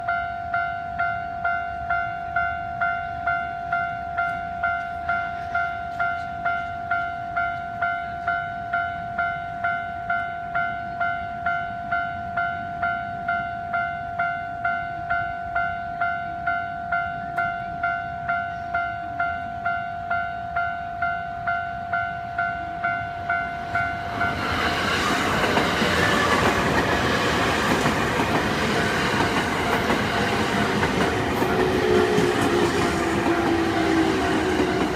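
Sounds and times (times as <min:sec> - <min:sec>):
electric train passing: 0:00.0 - 0:34.9
level-crossing warning bell: 0:00.0 - 0:34.9
wheel and rail noise: 0:20.9 - 0:34.9.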